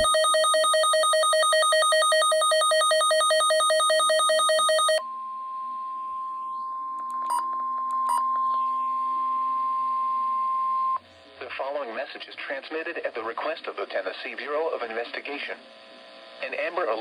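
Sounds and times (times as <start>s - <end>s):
electronic warble alarm: 0.0s - 11.0s
short beeps: 0.0s - 11.0s
steady single-pitch attention tone: 1.9s - 11.0s.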